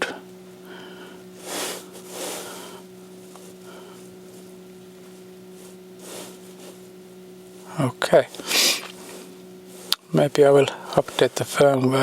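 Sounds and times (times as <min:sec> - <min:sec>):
low electrical hum: 0:00.0 - 0:12.0
person breathing out through nose: 0:00.6 - 0:02.9, 0:08.4 - 0:09.3.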